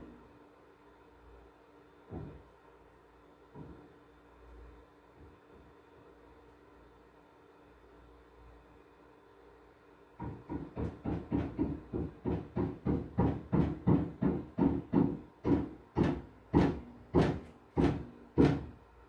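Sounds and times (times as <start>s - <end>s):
muffled hammering through ceiling: 2.0s - 2.6s, 10.2s - 18.9s.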